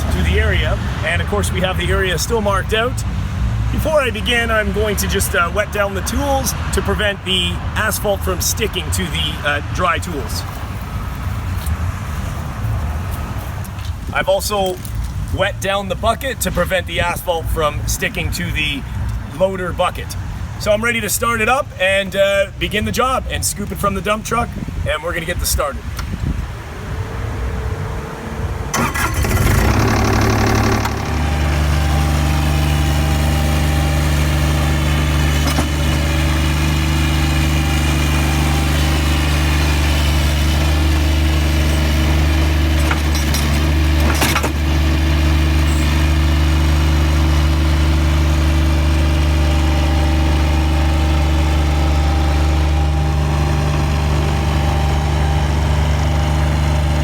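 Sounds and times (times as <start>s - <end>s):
loader engine cranking and idling: 0.0s - 12.3s, 25.8s - 57.0s.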